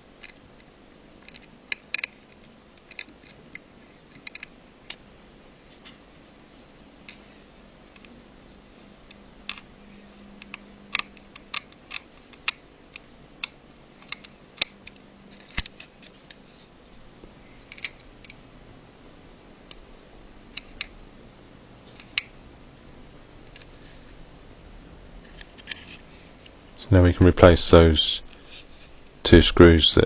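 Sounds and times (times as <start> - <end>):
small tools clicking and tapping: 1.2 - 5.0.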